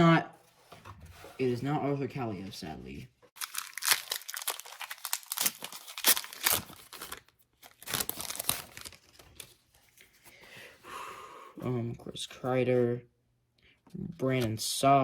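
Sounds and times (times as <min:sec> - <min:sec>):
wrapper crinkling and tearing: 0:03.4 - 0:09.6.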